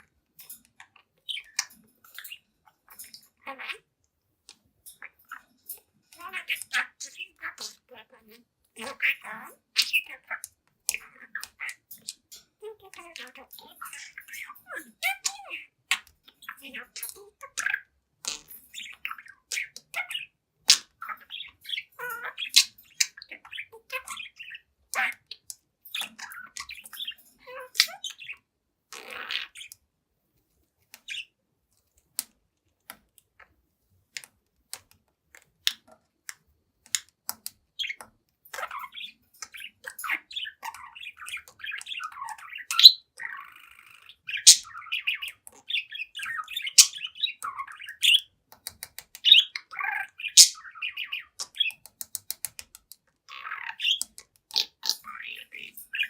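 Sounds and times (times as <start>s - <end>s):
budgerigar chattering: 6.2s - 28.4s, 38.6s - 48.3s, 49.2s - 51.8s, 53.3s - 56.0s.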